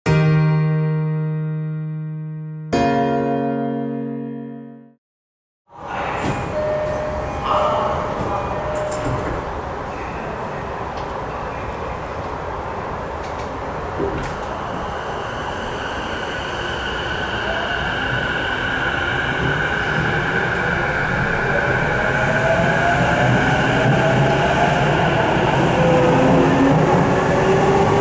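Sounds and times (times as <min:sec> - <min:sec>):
train running noise: 0:05.8 - 0:28.0.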